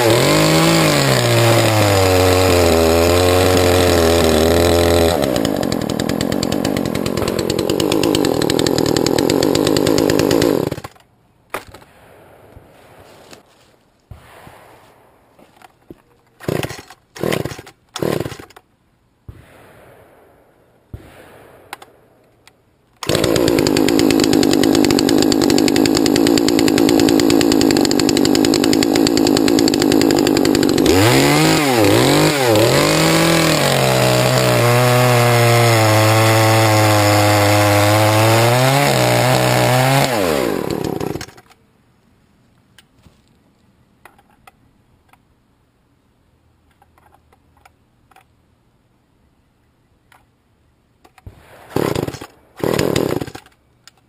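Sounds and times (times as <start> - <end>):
chainsaw engine running: 0.0 - 10.9, 23.0 - 41.3, 51.8 - 53.4.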